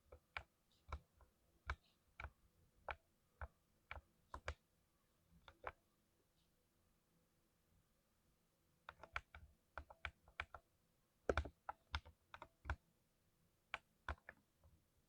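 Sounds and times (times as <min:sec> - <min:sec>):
mechanical keyboard typing: 0:03.9 - 0:04.6, 0:08.9 - 0:10.6, 0:11.3 - 0:12.8.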